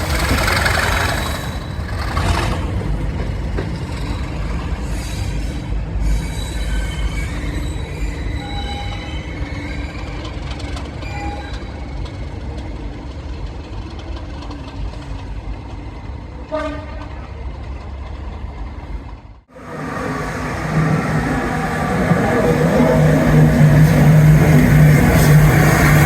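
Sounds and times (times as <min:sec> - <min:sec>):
train rumbling on rails: 0:00.0 - 0:26.0
train horn tone: 0:16.4 - 0:17.3.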